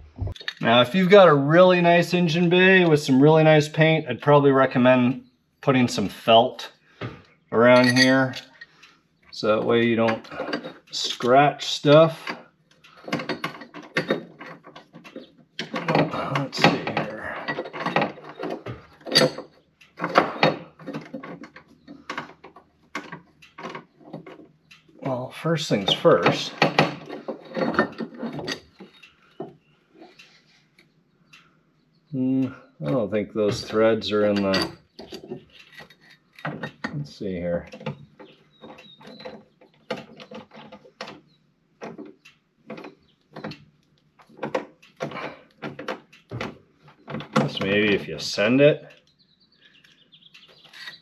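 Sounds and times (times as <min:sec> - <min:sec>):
metallic clicks and scrapes: 0:07.6 - 0:31.5, 0:32.8 - 0:51.0
metal plate and bolts knocking: 0:07.7 - 0:08.5, 0:13.0 - 0:24.8, 0:25.9 - 0:29.5.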